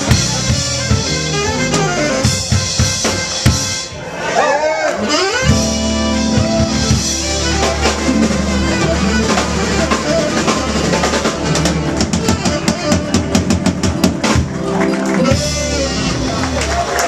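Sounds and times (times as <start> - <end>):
live rock band playing: 0.0 - 17.0
quick drum hits: 5.6 - 14.8.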